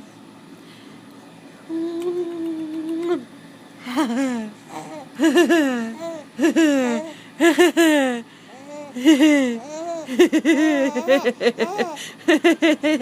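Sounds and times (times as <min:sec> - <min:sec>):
baby laughing: 0:08.5 - 0:12.0.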